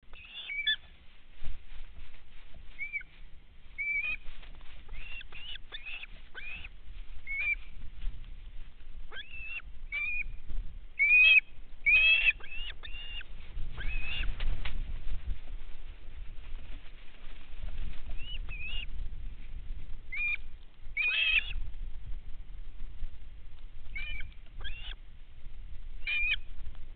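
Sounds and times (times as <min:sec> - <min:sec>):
birds chirping and whistling: 0:00.1 - 0:00.9, 0:02.8 - 0:03.1, 0:03.8 - 0:04.2, 0:04.9 - 0:07.7, 0:09.1 - 0:10.4, 0:13.8 - 0:14.3, 0:18.2 - 0:18.9, 0:20.1 - 0:20.4, 0:26.0 - 0:26.4.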